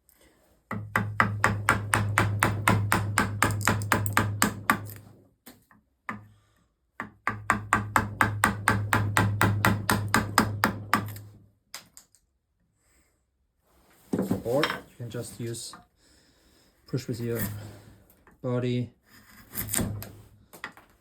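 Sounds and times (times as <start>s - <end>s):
mallet tapping chisel into wood: 0.7s - 5.0s, 7.0s - 11.2s.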